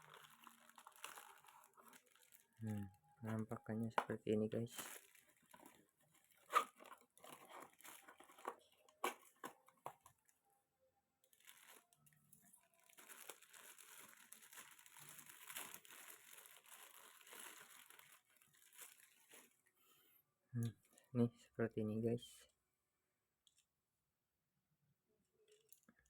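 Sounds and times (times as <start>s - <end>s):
plastic packaging crinkling: 0.0s - 10.3s, 11.2s - 19.6s.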